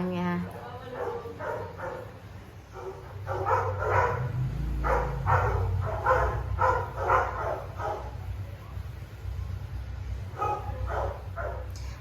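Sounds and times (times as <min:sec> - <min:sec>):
dog barking: 0:00.9 - 0:08.3, 0:10.3 - 0:11.8.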